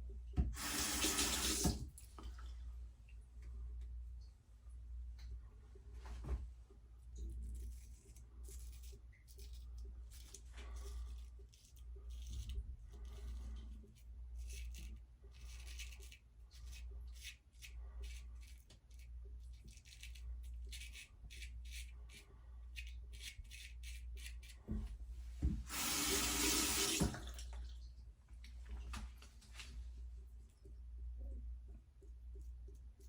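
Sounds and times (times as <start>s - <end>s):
faucet running: 0.5s - 1.9s, 25.7s - 27.7s.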